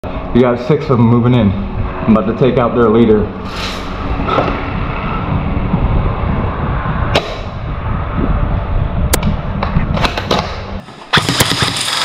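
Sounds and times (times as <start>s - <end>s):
low rumbling noise: 0.0s - 12.0s
airsoft gun shots: 11.1s - 12.0s.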